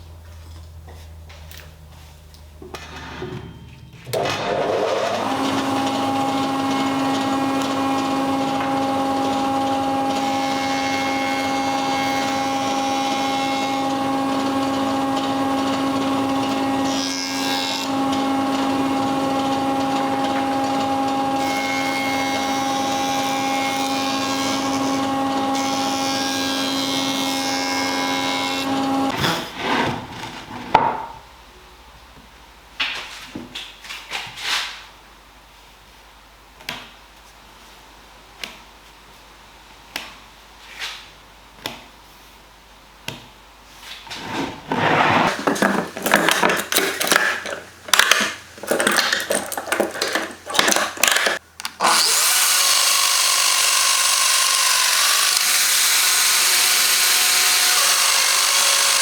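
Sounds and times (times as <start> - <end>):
power tool working wood: 4.1 - 30.2, 44.2 - 59.0.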